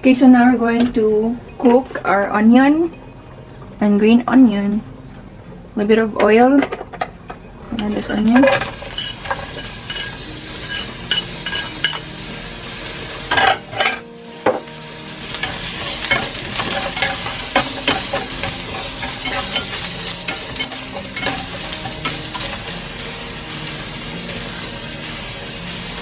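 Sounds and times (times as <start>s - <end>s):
onion sizzling in hot oil: 7.5s - 26.0s.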